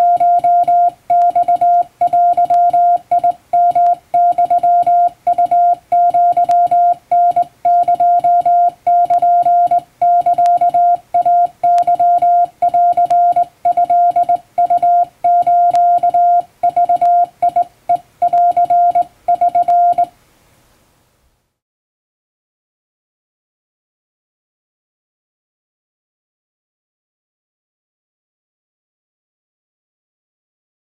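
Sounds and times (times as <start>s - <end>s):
morse code tone: 0.0s - 20.1s.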